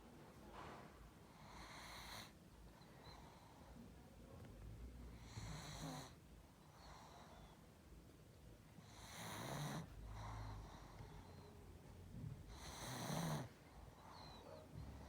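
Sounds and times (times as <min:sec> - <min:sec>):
dog snoring: 0:01.4 - 0:02.4, 0:05.1 - 0:07.4, 0:08.8 - 0:11.4, 0:12.5 - 0:15.0.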